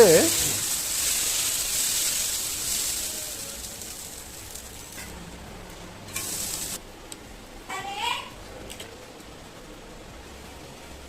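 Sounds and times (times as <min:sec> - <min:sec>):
batter sizzling on a hot griddle: 0:00.0 - 0:06.8.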